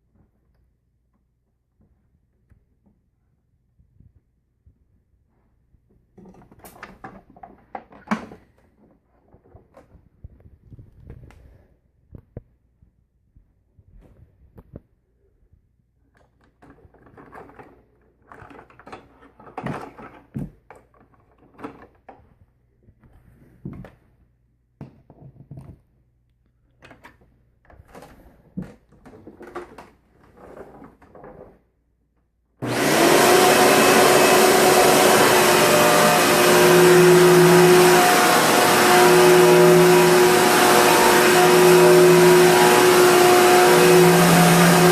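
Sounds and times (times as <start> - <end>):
knocks and rustling of handling: 0.0 - 15.0, 16.0 - 32.4
vacuum cleaner running: 32.6 - 44.9.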